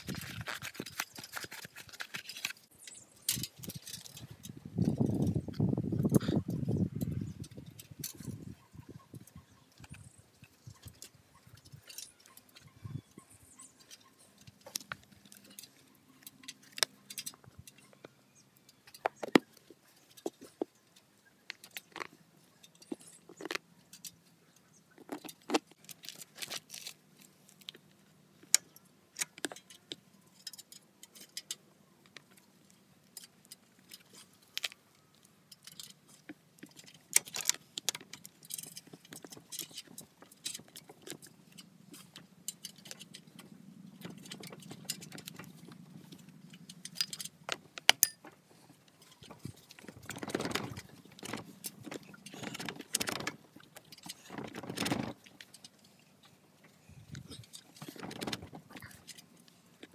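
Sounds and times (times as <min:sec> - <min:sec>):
small objects clicking and jingling: 0:00.0 - 0:08.7, 0:09.3 - 0:59.9.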